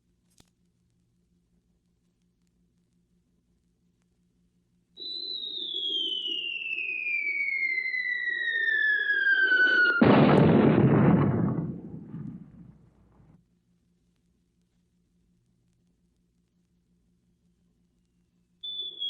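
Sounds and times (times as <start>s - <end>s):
falling shell whistle: 5.0s - 11.9s, 18.6s - 19.0s
loud explosion rumbling: 7.5s - 13.3s.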